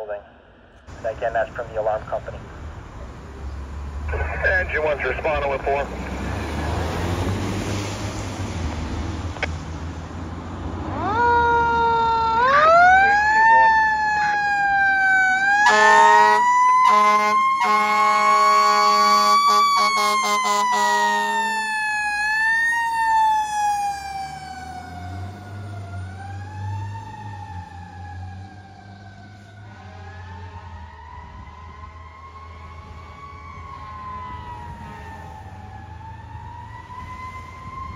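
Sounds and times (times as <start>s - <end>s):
engine low rumble: 0.0s - 15.5s
fire engine siren wailing: 10.8s - 37.9s
truck horn blasts: 15.6s - 21.4s.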